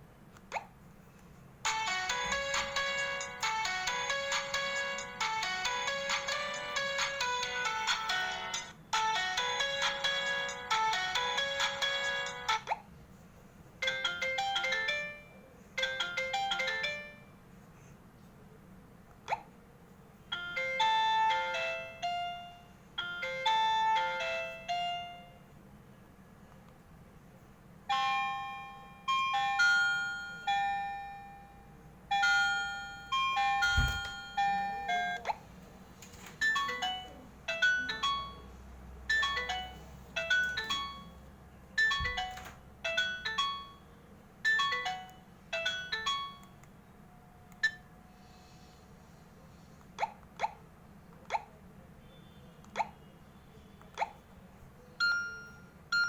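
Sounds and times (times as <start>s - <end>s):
phone ringtones playing: 1.7s - 12.7s, 32.1s - 35.3s, 39.1s - 41.2s, 41.8s - 43.8s, 44.4s - 46.4s, 55.0s - 56.0s.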